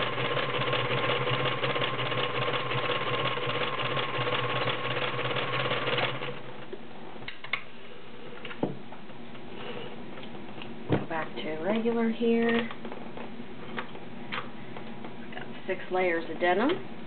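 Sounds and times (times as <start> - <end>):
sewing machine stitching: 0.0 - 6.5.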